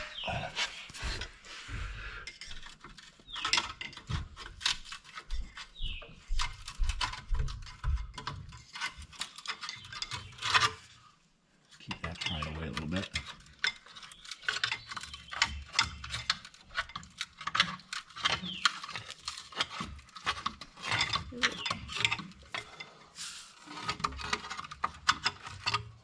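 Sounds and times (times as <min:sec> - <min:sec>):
hand tools clinking on metal: 0:11.8 - 0:23.2.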